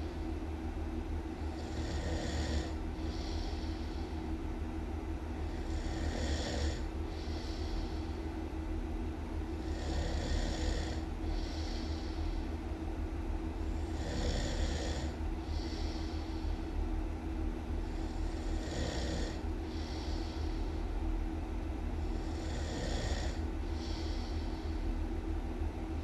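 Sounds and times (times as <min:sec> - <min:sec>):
steady low hum: 0:00.0 - 0:26.0
person snoring loudly: 0:01.6 - 0:03.9, 0:05.5 - 0:07.9, 0:09.6 - 0:12.0, 0:13.7 - 0:16.0, 0:18.0 - 0:20.4, 0:22.1 - 0:24.2.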